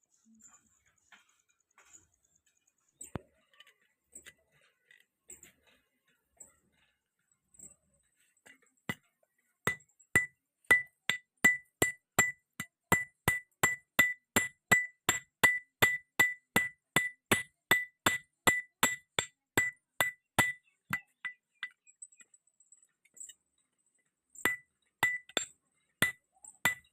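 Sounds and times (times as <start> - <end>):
hammer striking steel on anvil: 9.7 - 21.8, 24.4 - 26.9.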